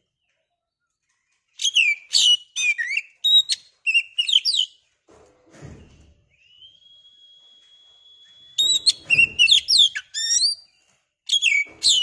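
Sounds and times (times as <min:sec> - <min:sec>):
long rising bird whistle: 0:06.3 - 0:10.5
bird singing whistled notes: 0:06.3 - 0:12.0.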